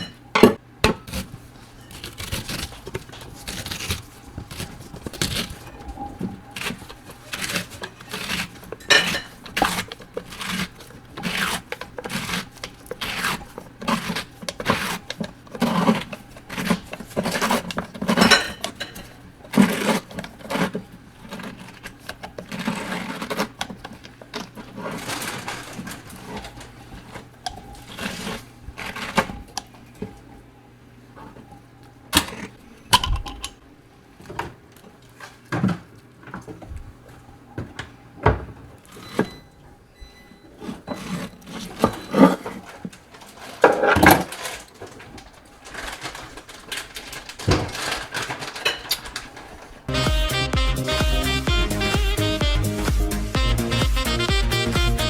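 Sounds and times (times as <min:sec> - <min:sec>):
kitchen handling noises: 0:00.0 - 0:30.2, 0:32.1 - 0:33.6, 0:40.5 - 0:49.9
knife cutting on cutting board: 0:00.9 - 0:18.6, 0:19.4 - 0:25.0.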